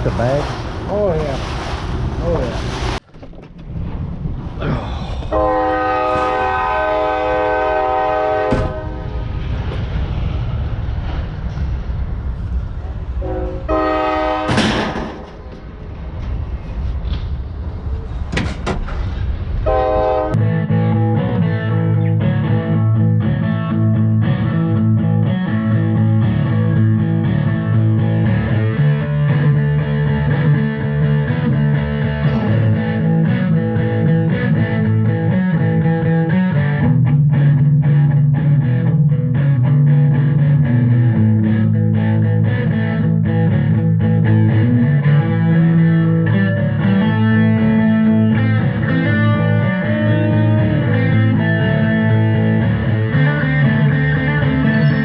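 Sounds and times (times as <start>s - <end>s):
guitar-led rock music: 20.4s - 55.0s.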